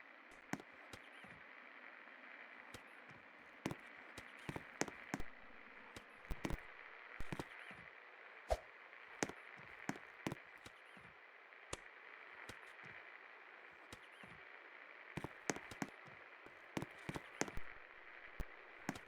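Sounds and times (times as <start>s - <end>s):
sharp clicks and knocks: 3.7s - 7.5s, 15.2s - 16.2s, 16.8s - 19.0s.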